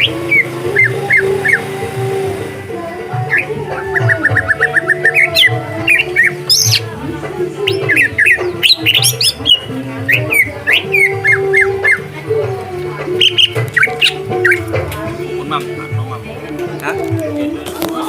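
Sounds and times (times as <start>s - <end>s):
bird chirping and whistling: 0.0s - 2.4s, 3.3s - 6.8s, 7.6s - 12.1s, 13.2s - 14.7s
background music with low notes: 0.0s - 18.0s.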